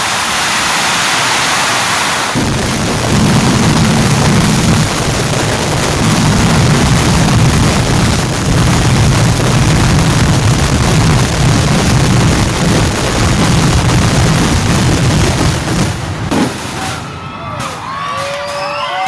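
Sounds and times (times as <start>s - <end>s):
firecracker bangs: 0.0s - 18.4s.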